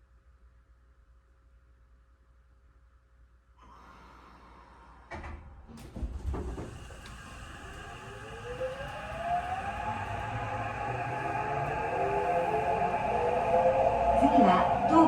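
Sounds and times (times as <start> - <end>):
train doors slamming shut: 5.1 - 9.2
traction motor whine rising: 6.8 - 15.0.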